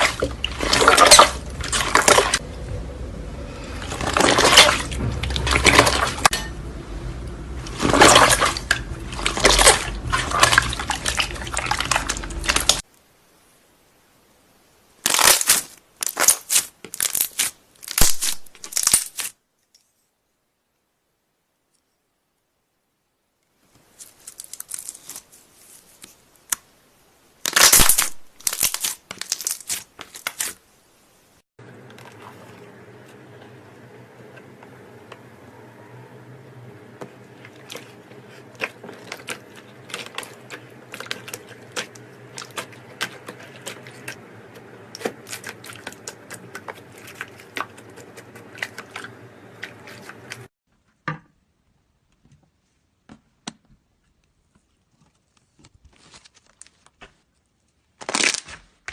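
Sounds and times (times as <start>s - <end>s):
steady low hum: 0.0s - 12.8s
slime crackling and crunching: 15.0s - 19.4s, 27.4s - 30.6s, 37.7s - 44.2s, 58.0s - 58.8s.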